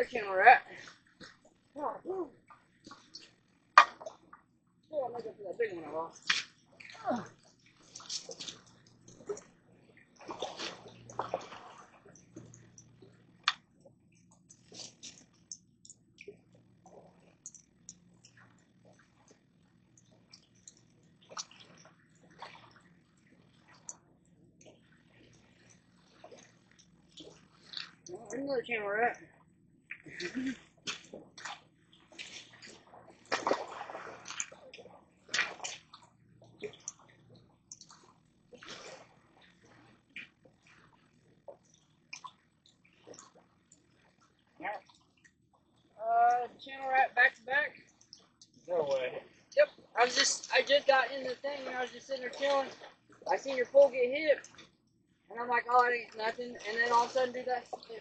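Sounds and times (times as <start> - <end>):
water splashing and sloshing: 0.0 - 58.0
fish splashing in water: 2.8 - 4.3, 10.2 - 13.7, 20.2 - 24.0, 30.0 - 37.1, 37.7 - 43.9, 52.3 - 53.4.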